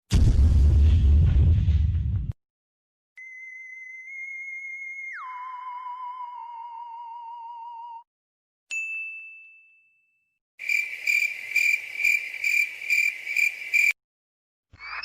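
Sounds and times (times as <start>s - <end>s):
warbling whistle tone: 3.2s - 7.8s
cricket chirp effect: 10.6s - 14.0s.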